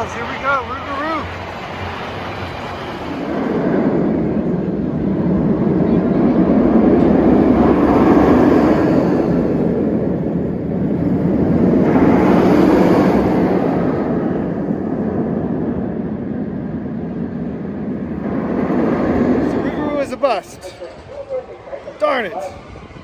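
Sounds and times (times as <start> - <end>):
wind buffeting microphone: 0.0 - 23.0.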